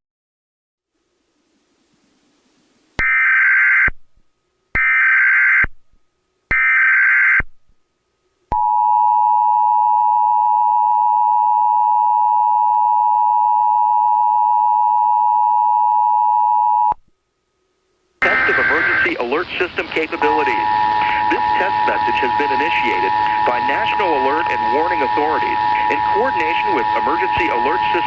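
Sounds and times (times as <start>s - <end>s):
digital data bursts: 18.2s - 28.0s
two-tone attention signal: 18.2s - 28.0s.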